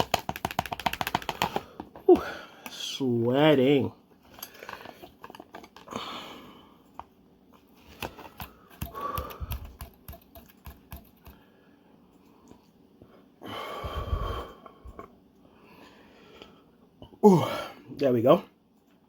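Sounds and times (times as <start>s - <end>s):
utensil tapping a cup: 0.0s - 1.6s, 8.4s - 11.4s.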